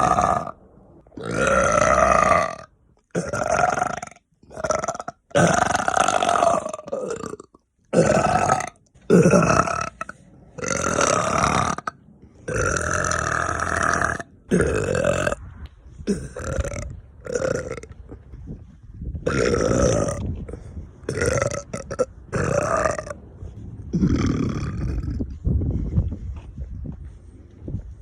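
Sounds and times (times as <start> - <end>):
woman burping loudly: 1.2 - 15.4, 16.0 - 18.2, 19.2 - 20.5, 21.1 - 23.2, 23.9 - 25.2.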